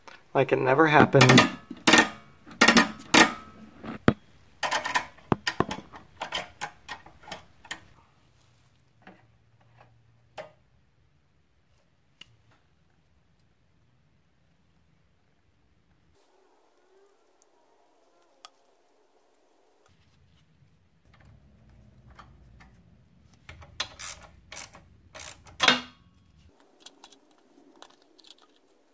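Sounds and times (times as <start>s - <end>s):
small parts clicking and knocking: 1.1s - 8.0s, 23.4s - 28.9s.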